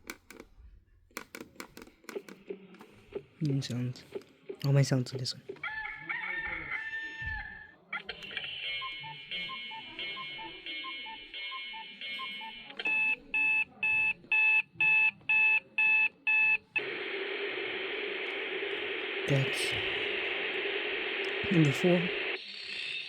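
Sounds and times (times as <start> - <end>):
sharp electronic beeps: 8.4 - 13.1.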